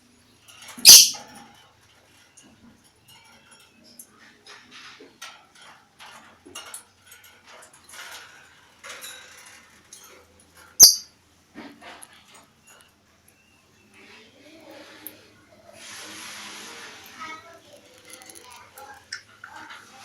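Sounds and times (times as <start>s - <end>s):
lovebird chirping and chattering: 0.8s - 1.2s, 10.8s - 11.0s
lovebird sharp shriek: 0.8s - 1.2s, 10.8s - 11.0s.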